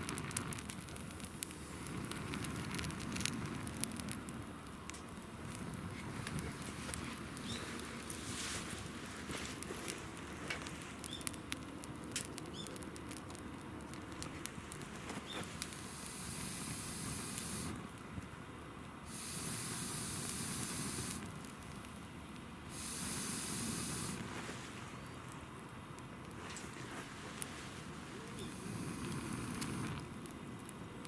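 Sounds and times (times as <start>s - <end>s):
campfire wood crackling and popping: 0.0s - 31.0s
high hissing: 15.7s - 17.8s, 19.1s - 21.3s, 22.7s - 24.2s, 28.3s - 30.1s.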